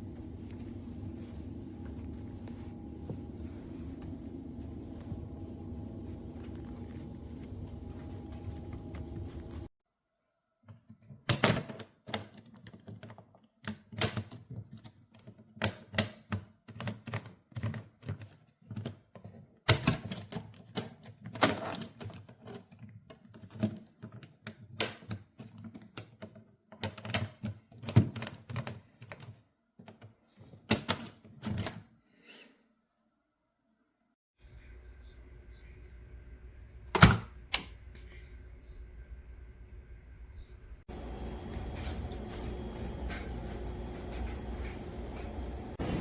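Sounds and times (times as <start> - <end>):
low rumble: 0.0 - 9.7.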